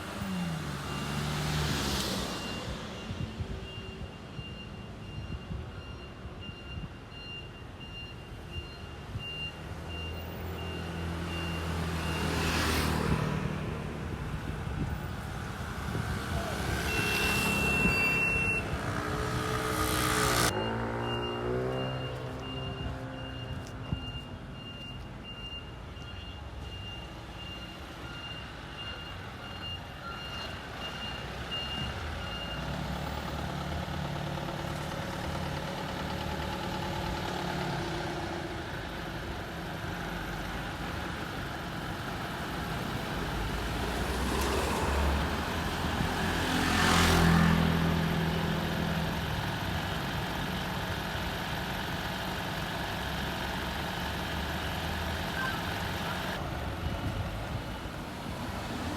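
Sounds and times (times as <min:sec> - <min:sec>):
reversing beeper: 0:16.3 - 0:32.6.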